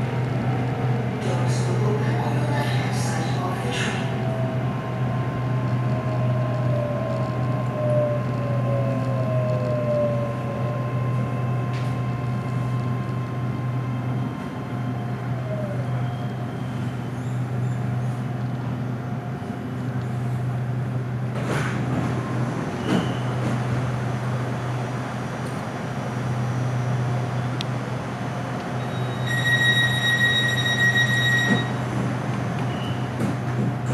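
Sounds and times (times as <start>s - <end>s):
electric train low drone: 0.0s - 33.9s
train whine: 0.0s - 33.9s.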